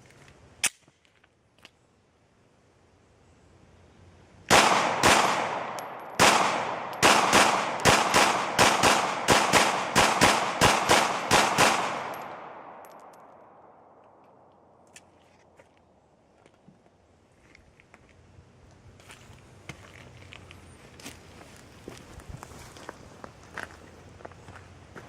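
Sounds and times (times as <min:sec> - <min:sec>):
pistol shots with ringing echo: 0:04.5 - 0:14.0.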